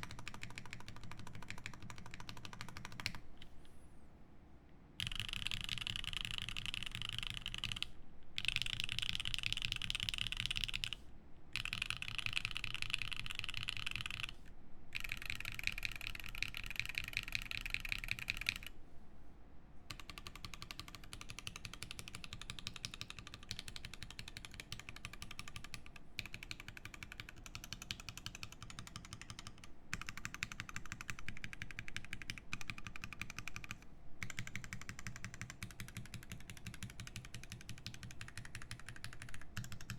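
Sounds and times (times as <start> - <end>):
mechanical keyboard typing: 0.0 - 3.2, 5.0 - 11.0, 11.6 - 14.4, 15.0 - 18.7, 19.9 - 39.9.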